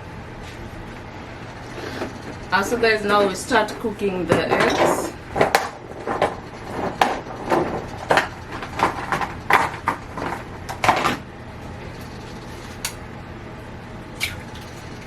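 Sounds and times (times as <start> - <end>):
low steady hum: 0.0 - 15.0
dishes and utensils knocking: 3.1 - 11.2.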